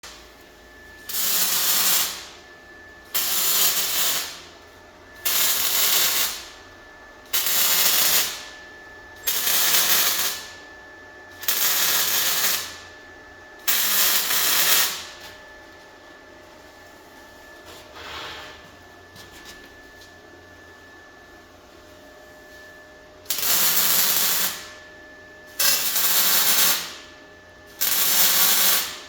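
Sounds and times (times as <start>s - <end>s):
faint high whine: 0.1s - 27.8s
welding arc bursts: 1.1s - 2.3s, 3.1s - 4.4s, 5.2s - 6.5s, 7.3s - 8.5s, 9.2s - 10.5s, 11.4s - 12.8s, 13.7s - 15.1s, 23.3s - 24.7s, 25.6s - 27.0s, 27.8s - 29.0s.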